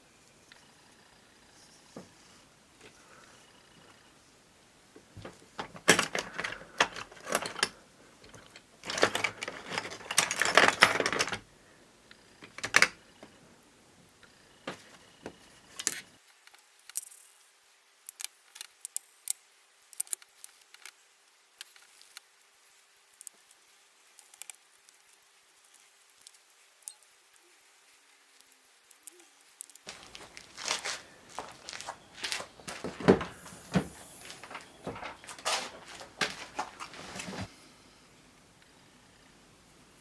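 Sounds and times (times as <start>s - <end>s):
small metal parts clinking: 5.6s - 11.4s, 25.7s - 27.5s.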